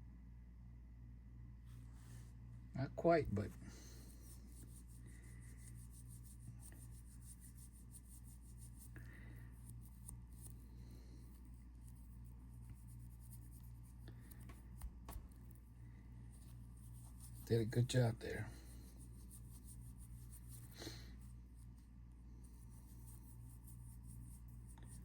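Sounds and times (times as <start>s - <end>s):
low steady hum: 0.0s - 25.0s
faint scratchy rubbing: 16.3s - 21.8s.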